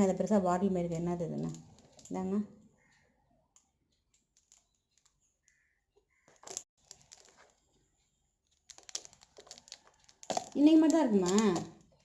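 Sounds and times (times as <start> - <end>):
plastic packaging rustling: 6.1 - 12.0.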